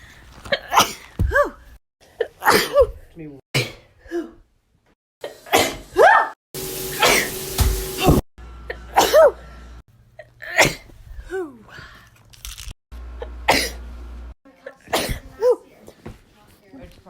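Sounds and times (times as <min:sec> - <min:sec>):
person sneezing: 0:02.3 - 0:02.9, 0:08.9 - 0:09.4, 0:10.5 - 0:11.5.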